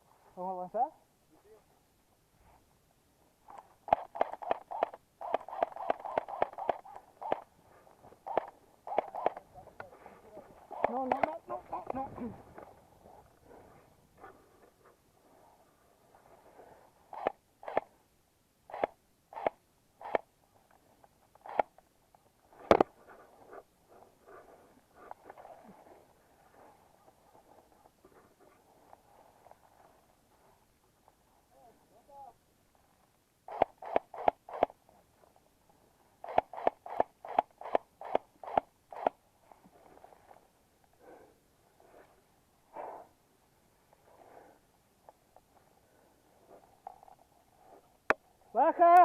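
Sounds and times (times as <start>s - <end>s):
airsoft rifle firing single shots: 3.8s - 7.5s, 8.2s - 9.4s, 33.5s - 34.8s.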